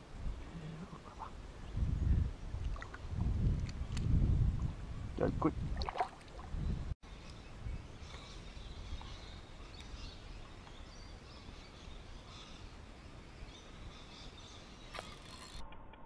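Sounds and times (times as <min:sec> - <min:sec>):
birds chirping: 0:06.5 - 0:15.4.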